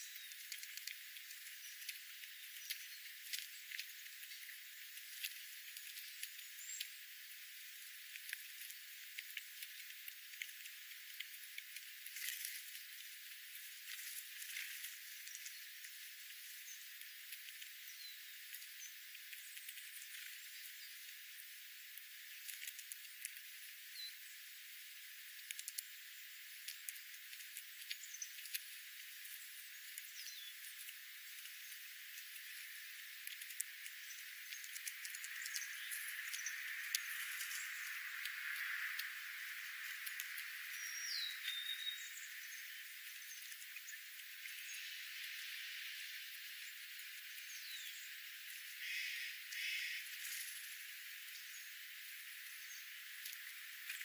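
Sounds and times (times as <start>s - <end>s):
small birds chipping: 0.0s - 54.0s
steady hiss: 0.0s - 54.0s
light clicks and ticks: 0.1s - 7.0s, 7.8s - 17.8s, 21.9s - 23.5s, 25.3s - 41.6s
high bird chirp: 40.8s - 42.2s.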